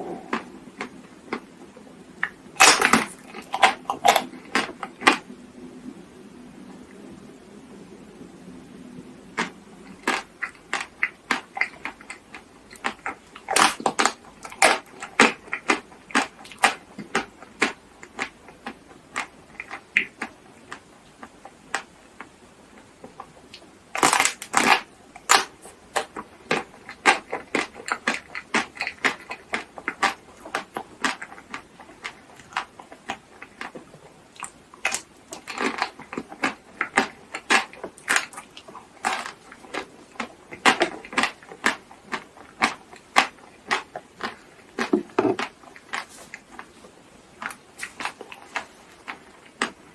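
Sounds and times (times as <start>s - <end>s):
chocolate crunching and chewing: 0.0s - 1.5s, 2.2s - 5.3s, 9.3s - 49.9s.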